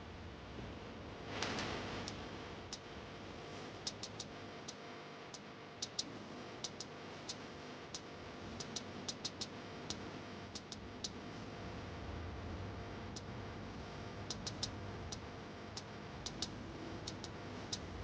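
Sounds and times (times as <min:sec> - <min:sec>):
faint sharp clicks: 0:03.9 - 0:04.8.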